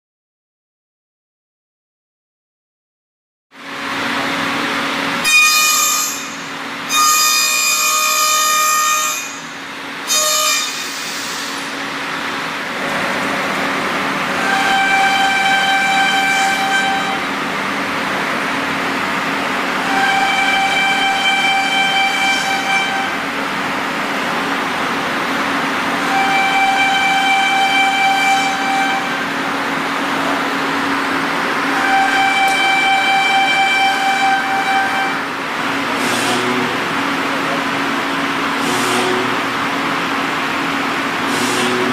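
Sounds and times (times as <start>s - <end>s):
high-pitched cutting whines: 4.9s - 11.8s, 14.0s - 17.5s, 18.6s - 23.4s, 25.9s - 36.9s
router spindle humming: 11.6s - 41.9s.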